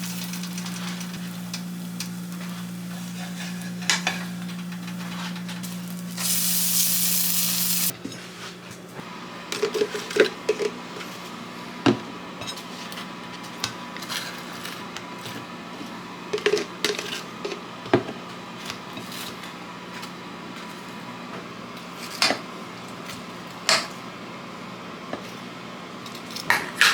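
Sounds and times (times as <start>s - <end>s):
steady low hum: 0.0s - 7.9s
loud hiss: 6.0s - 7.9s.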